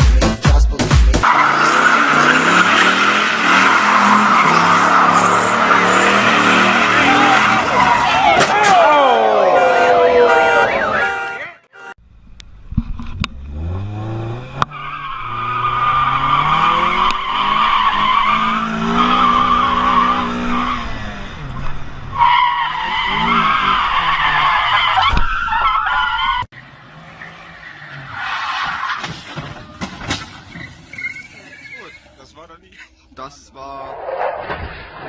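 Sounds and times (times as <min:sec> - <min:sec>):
car engine revving: 0:01.1 - 0:08.4, 0:12.1 - 0:24.8
tyres squealing: 0:01.2 - 0:11.6, 0:27.2 - 0:32.2.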